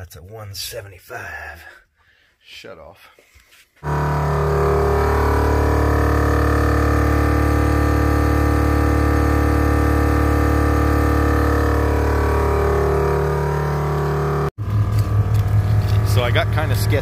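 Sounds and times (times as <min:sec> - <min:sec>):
air compressor humming: 0:03.8 - 0:17.0.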